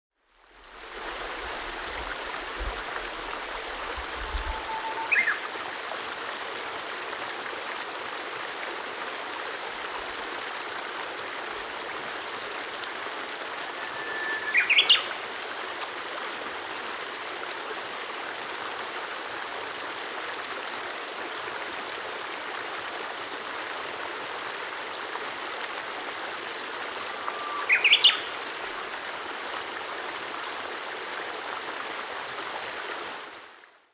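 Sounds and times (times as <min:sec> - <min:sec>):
flowing stream: 0:00.2 - 0:33.9
bird calling: 0:04.1 - 0:05.6, 0:13.5 - 0:15.4, 0:27.0 - 0:28.4.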